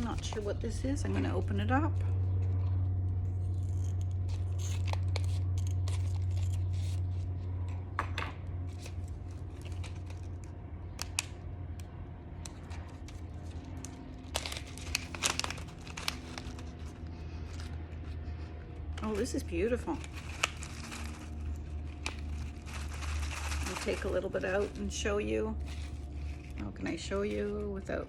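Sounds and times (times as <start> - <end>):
steady low hum: 0.0 - 28.0
packaging crinkling and tearing: 2.2 - 7.8, 8.6 - 27.7
small clicks and crackles: 8.7 - 28.0.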